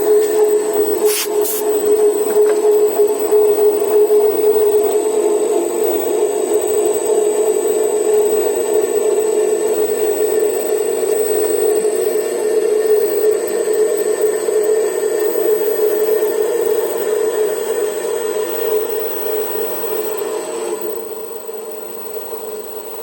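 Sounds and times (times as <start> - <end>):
lathe droning: 0.0 - 5.5.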